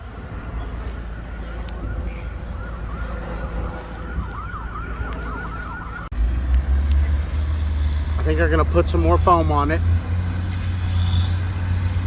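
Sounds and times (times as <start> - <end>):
siren yelping: 1.7 - 6.1.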